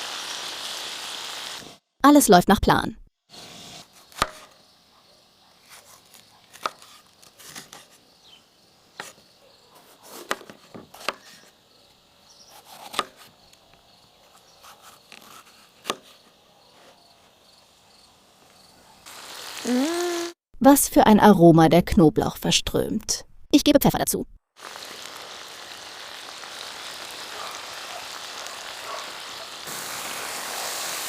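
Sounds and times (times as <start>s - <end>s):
knife chopping on cutting board: 4.1s - 4.5s, 10.1s - 11.3s, 12.6s - 13.3s, 14.6s - 16.1s.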